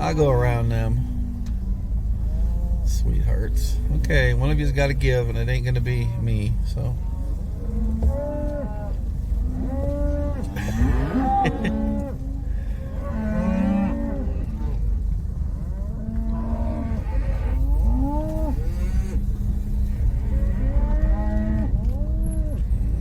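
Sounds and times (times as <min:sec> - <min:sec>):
steady low rumble: 0:00.0 - 0:23.0
cattle mooing: 0:04.7 - 0:15.0, 0:15.6 - 0:22.6.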